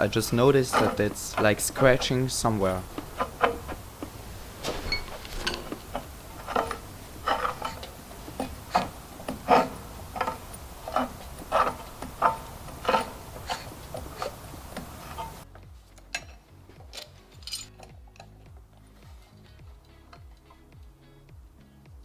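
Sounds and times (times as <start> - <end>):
flywheel scraping: 0.0 - 15.5.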